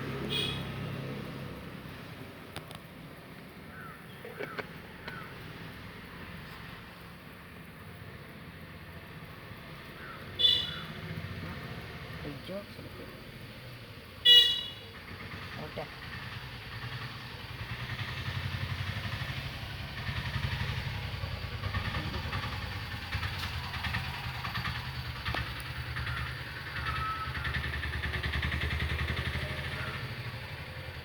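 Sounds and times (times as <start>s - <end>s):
engine idling: 12.0s - 31.0s.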